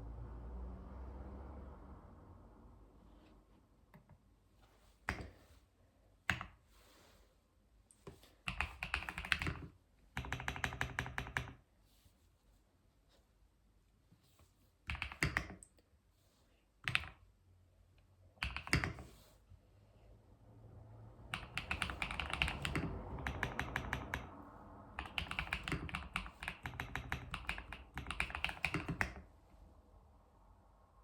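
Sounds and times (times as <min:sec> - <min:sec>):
computer keyboard typing: 0:08.5 - 0:11.6, 0:14.9 - 0:15.7, 0:16.8 - 0:17.2, 0:18.4 - 0:19.1, 0:21.3 - 0:29.3.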